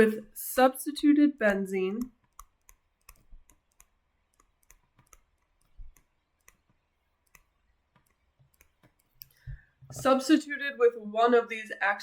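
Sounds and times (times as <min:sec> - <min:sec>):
stylus tapping on screen: 0:01.4 - 0:10.2.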